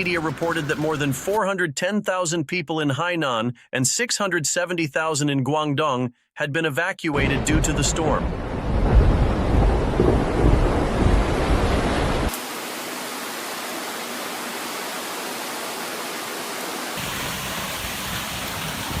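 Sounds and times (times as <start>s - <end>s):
heavy rain hissing: 0.0s - 1.4s, 11.7s - 19.0s
deep rumble of thunder: 7.2s - 12.3s.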